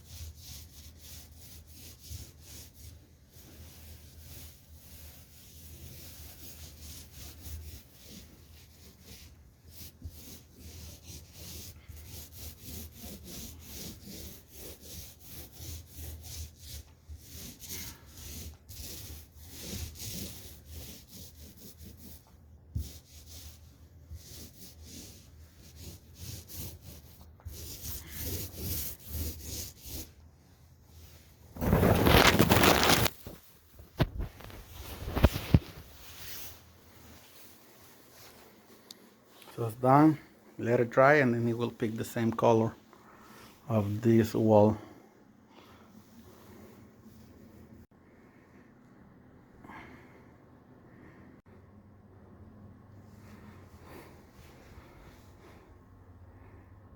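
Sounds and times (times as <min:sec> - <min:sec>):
paint roller rasping swish: 0:00.0 - 0:30.2, 0:30.9 - 0:39.0
rough scraping noise: 0:31.6 - 0:33.4.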